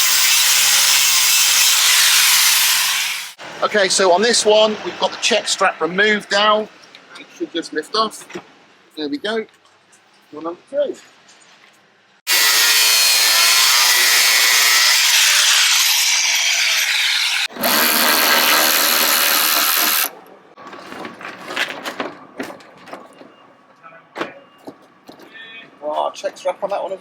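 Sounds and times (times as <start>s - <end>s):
power tool motor whining: 12.3s - 20.1s.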